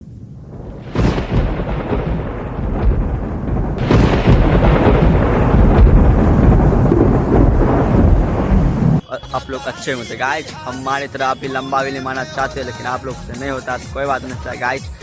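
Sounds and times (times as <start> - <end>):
wind buffeting microphone: 0.0 - 9.0.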